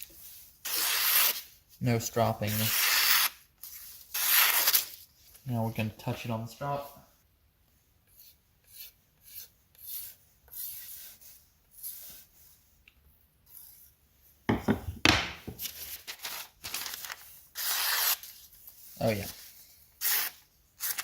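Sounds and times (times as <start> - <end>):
knife rubbing on a strop: 8.1 - 12.5.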